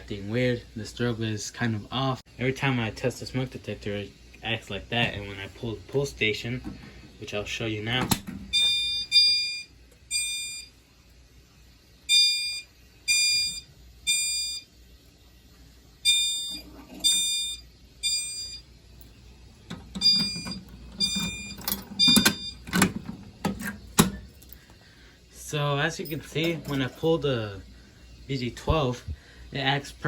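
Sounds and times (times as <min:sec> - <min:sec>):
short high alarm chimes: 0:08.5 - 0:10.8, 0:12.1 - 0:14.7, 0:16.0 - 0:18.7, 0:19.9 - 0:22.8.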